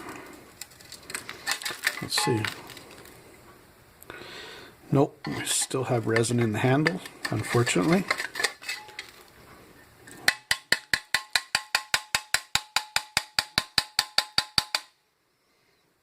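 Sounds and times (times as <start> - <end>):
handling noise: 0.0 - 3.6
faint steady tone: 1.9 - 7.4, 14.9 - 16.0.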